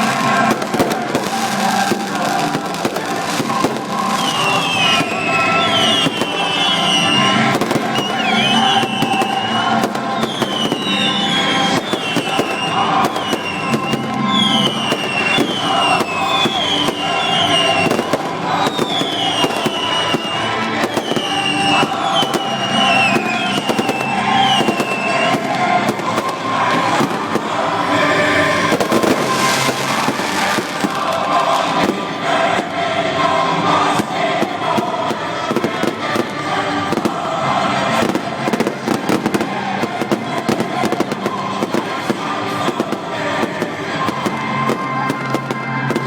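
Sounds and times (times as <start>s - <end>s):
fireworks crackling and popping: 0.0s - 46.0s
short falling whistles: 3.6s - 26.3s.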